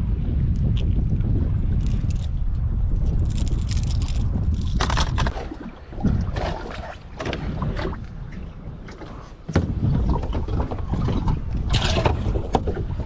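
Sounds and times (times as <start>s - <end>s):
wind buffeting microphone: 0.0s - 13.0s
water splashes: 4.8s - 13.0s.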